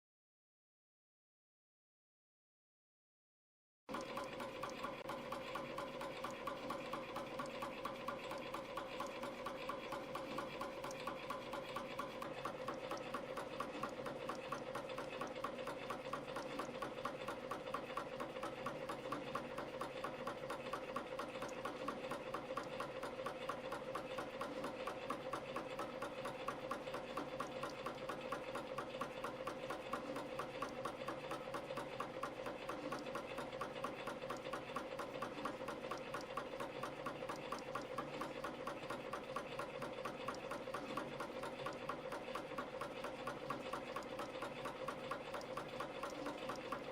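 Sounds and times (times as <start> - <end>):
spring machine mechanical clatter: 3.9 - 46.9.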